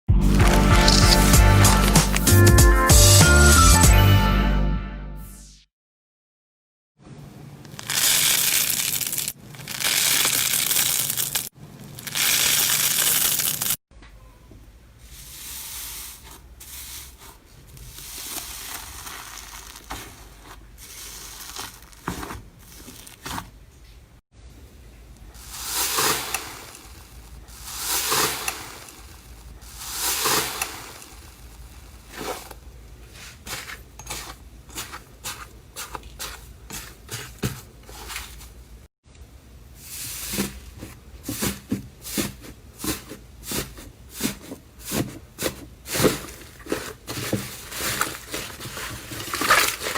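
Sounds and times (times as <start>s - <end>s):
slime crackling and popping: 7.7s - 13.8s, 18.1s - 23.4s, 25.4s - 32.6s
slime squishing: 15.2s - 24.1s, 40.0s - 49.9s.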